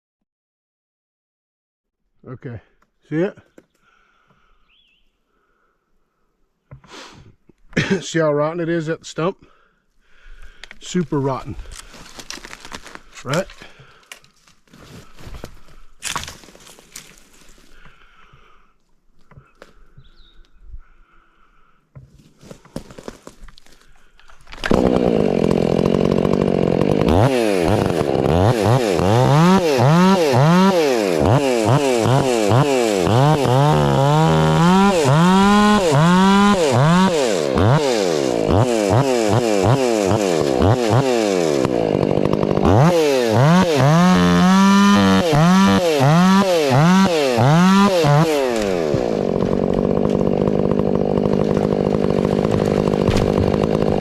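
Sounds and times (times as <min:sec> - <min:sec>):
chainsaw cutting wood: 0:10.4 - 0:18.5, 0:22.0 - 0:54.0.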